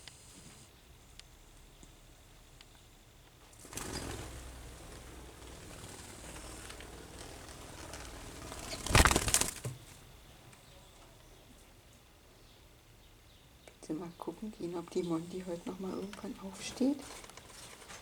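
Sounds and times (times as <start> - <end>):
rustling: 3.4 - 10.1, 16.0 - 18.0.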